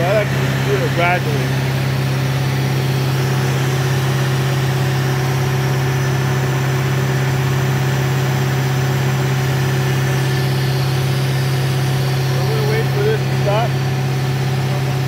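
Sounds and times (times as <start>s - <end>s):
engine and compressor droning: 0.0s - 15.0s.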